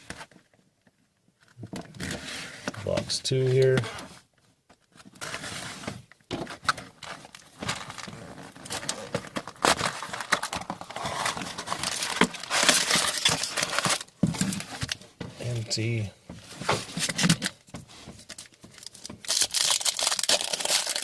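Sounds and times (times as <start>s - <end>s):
plastic wrapping crinkling and tearing: 7.0s - 15.0s, 18.3s - 21.0s.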